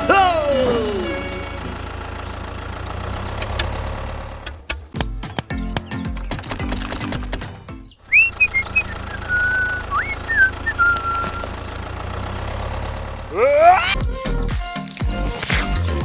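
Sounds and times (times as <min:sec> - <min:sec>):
gliding whistle-like notes: 0:08.1 - 0:11.6
motor humming: 0:08.1 - 0:13.4.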